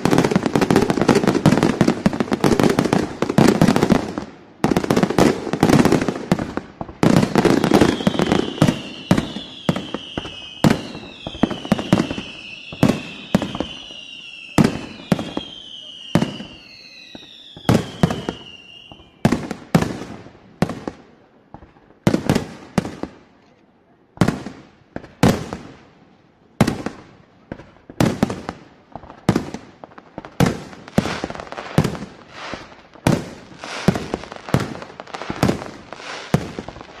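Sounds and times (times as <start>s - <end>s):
fireworks bangs with crackle: 0.0s - 23.4s, 24.1s - 37.0s
falling firework whistle: 7.1s - 19.5s.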